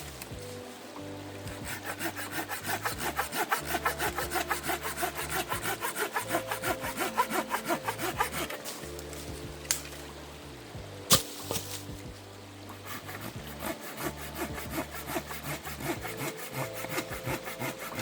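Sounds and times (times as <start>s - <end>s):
hand saw cutting wood: 1.5s - 9.0s, 12.7s - 18.0s.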